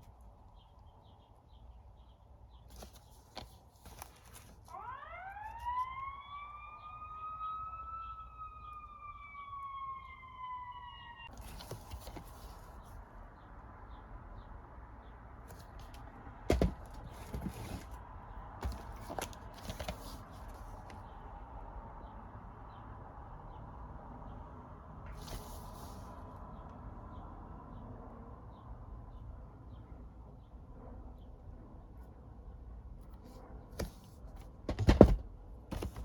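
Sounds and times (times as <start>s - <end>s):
handling clicks and rustles: 2.5s - 6.0s, 11.3s - 13.0s, 15.4s - 21.1s, 33.0s - 36.0s
siren wailing: 4.7s - 11.3s.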